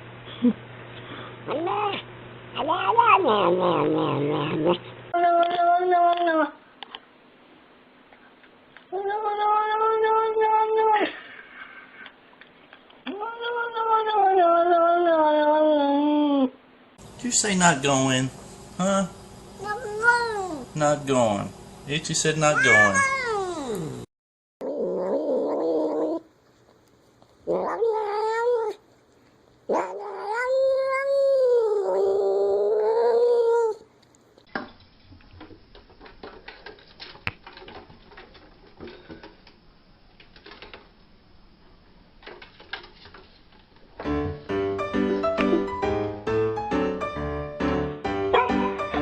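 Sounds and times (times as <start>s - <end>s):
cats meowing and yowling: 2.6s - 4.1s, 9.0s - 11.2s, 13.1s - 16.5s, 22.5s - 24.0s, 27.5s - 28.8s, 29.7s - 33.8s
music: 44.0s - 49.0s.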